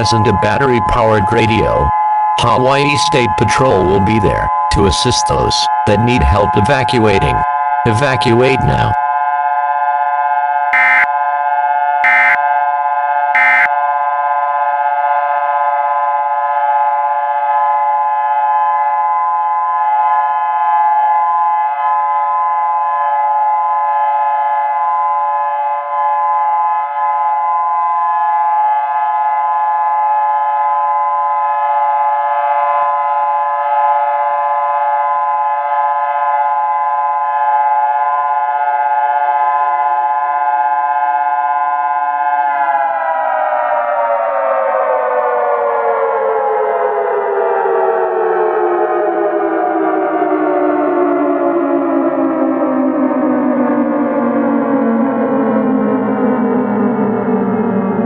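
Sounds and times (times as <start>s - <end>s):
civil defense siren chord: 0.0s - 58.0s
short electronic bursts: 10.8s - 11.1s, 12.0s - 12.4s, 13.4s - 13.7s.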